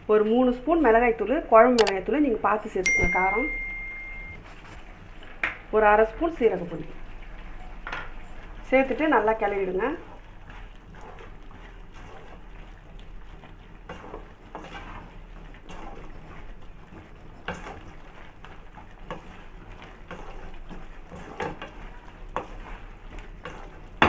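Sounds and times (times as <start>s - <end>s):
low steady hum: 1.4s - 4.8s
spoon scraping in a pan: 10.1s - 24.0s.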